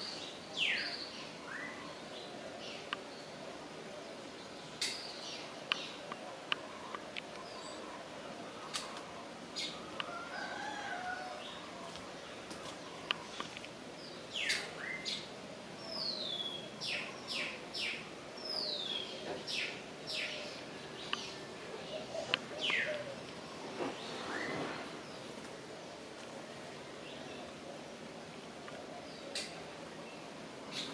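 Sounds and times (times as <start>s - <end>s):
steady background hiss: 0.0s - 30.9s
birds calling: 4.2s - 26.0s.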